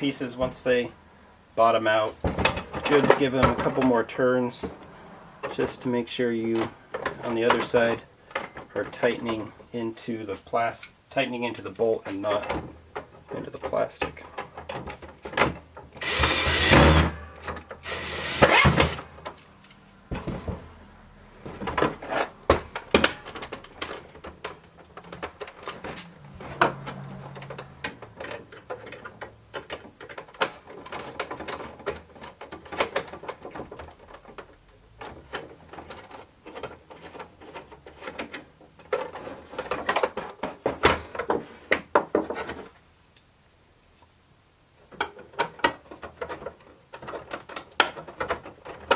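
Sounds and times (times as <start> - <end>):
power drill driving screws: 16.0 - 17.2, 17.8 - 19.0
small parts clicking and knocking: 21.5 - 43.3, 44.9 - 48.9.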